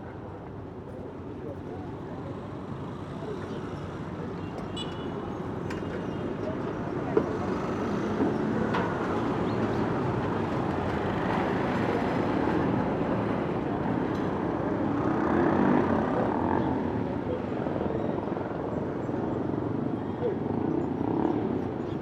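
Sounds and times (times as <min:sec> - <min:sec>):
traffic rumble: 0:00.0 - 0:22.0.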